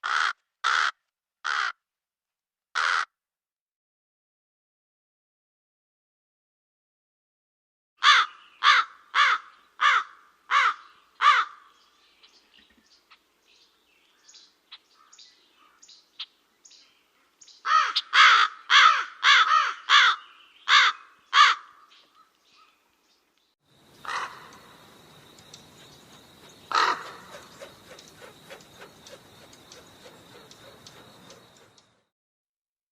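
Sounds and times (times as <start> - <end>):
crow cawing: 0.0 - 1.8, 2.8 - 3.2, 8.0 - 11.7, 17.7 - 22.3, 24.0 - 24.7, 26.6 - 31.8
background hiss: 22.4 - 32.0.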